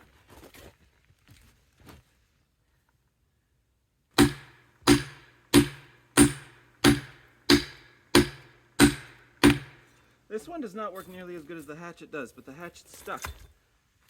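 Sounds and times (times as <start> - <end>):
tool chopping into log: 4.2 - 9.8.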